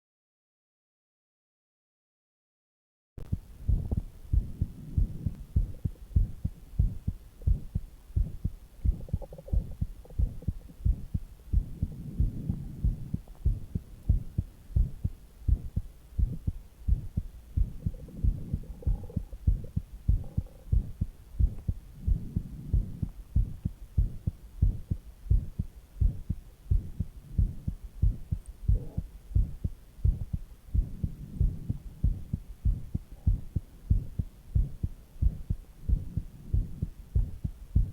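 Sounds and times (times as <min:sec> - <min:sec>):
heartbeat thumps: 0:03.2 - 0:37.9
stomach gurgles: 0:08.9 - 0:10.8, 0:17.7 - 0:20.9, 0:28.7 - 0:29.1.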